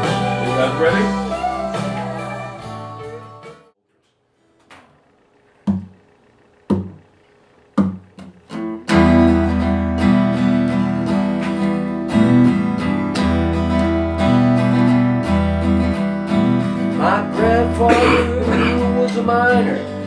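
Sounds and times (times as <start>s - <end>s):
strummed acoustic guitar: 0.0s - 3.6s, 7.7s - 20.0s.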